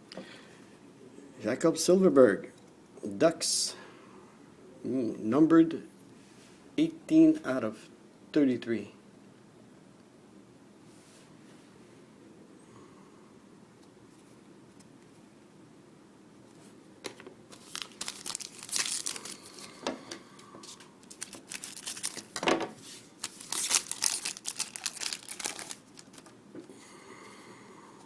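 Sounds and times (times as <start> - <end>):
wrapper tearing and crinkling: 17.5 - 19.7, 20.7 - 22.4, 23.2 - 26.4.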